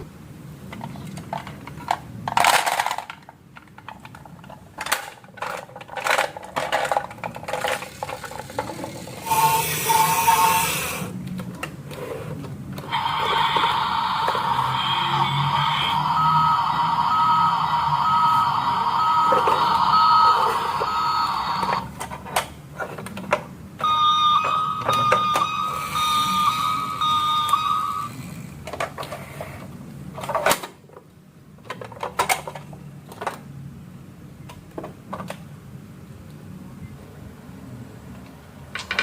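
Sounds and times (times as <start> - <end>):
toy electronic beeping: 9.2 - 11.1, 12.9 - 21.9, 23.8 - 28.3.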